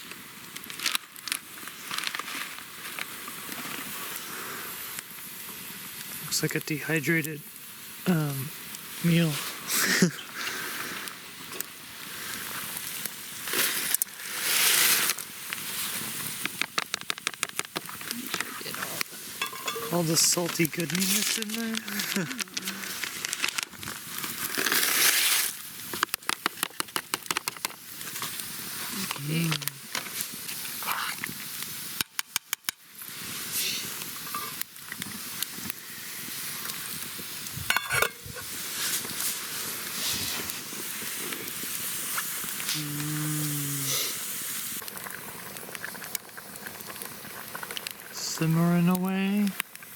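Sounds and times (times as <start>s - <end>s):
hiss: 0.0s - 48.8s
steady sizzle: 0.0s - 49.9s
pasta water bubbling: 11.7s - 29.0s
utensil clinking against pot: 19.4s - 20.0s, 37.7s - 38.2s
dry pasta pouring into pot: 19.4s - 25.6s.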